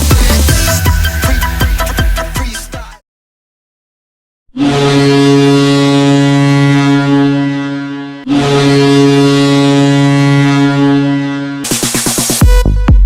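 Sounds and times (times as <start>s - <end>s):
arena goal horn blasts: 4.6s - 11.8s.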